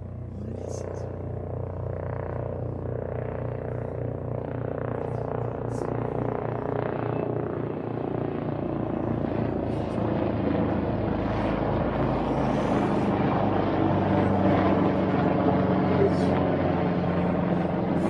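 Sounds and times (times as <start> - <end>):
helicopter flying over: 0.0 - 18.0.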